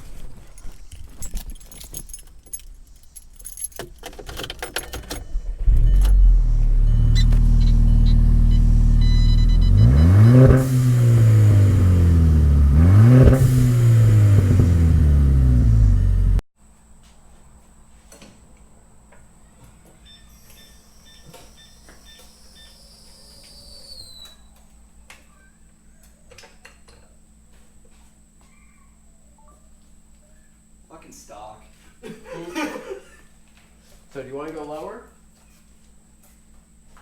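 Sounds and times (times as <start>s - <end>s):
keys jangling: 0.1s - 5.4s
car engine idling and revving: 4.6s - 16.4s.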